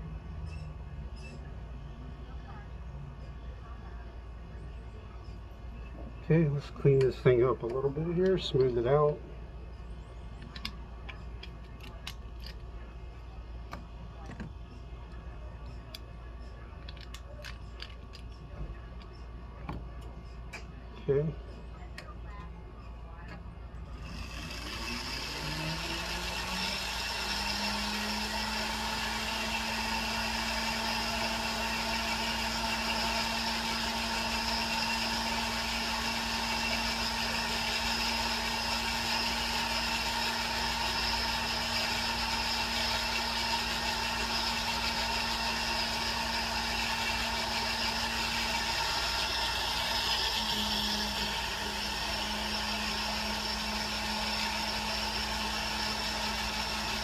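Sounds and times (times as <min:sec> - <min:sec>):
small electric motor humming: 0:23.9 - 0:57.0.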